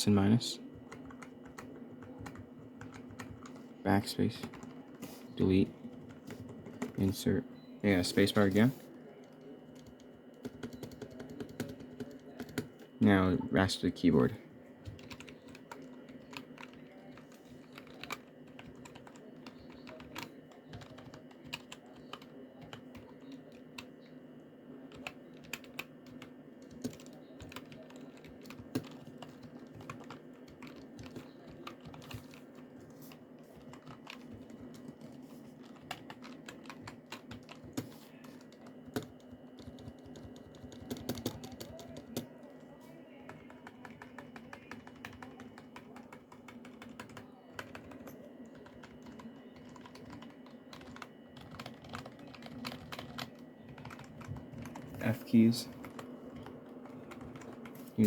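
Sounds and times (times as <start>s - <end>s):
keyboard keystrokes: 33.6s - 42.3s, 43.3s - 54.9s.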